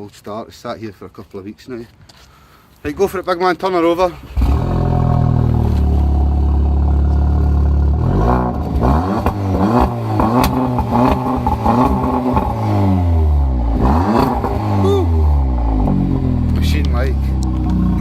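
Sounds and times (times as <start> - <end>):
exhaust cracks: 3.9 - 18.0
car engine revving: 4.2 - 18.0.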